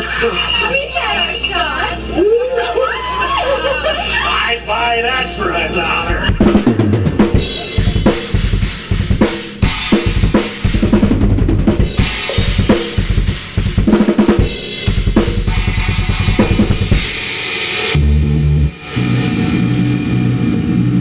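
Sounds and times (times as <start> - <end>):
snare and bass drum hits: 6.2 - 17.2
washing cymbals: 6.4 - 21.0.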